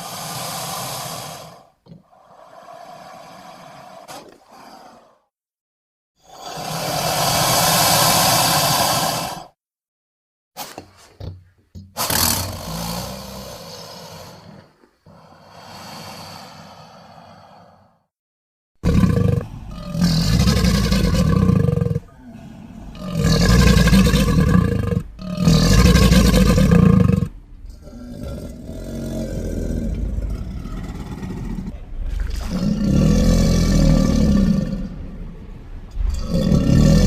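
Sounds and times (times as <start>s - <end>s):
monster crocodile roaring: 6.2s - 9.5s, 12.0s - 14.6s, 18.8s - 37.0s.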